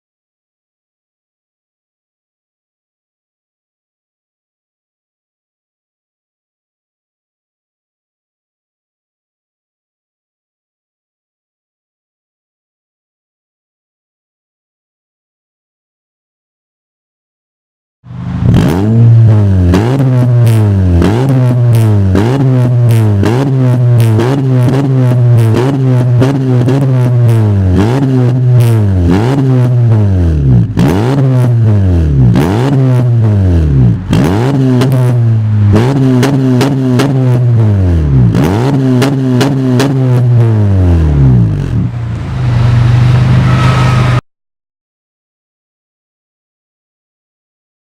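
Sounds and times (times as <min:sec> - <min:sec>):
car engine revving: 0:18.1 - 0:44.2.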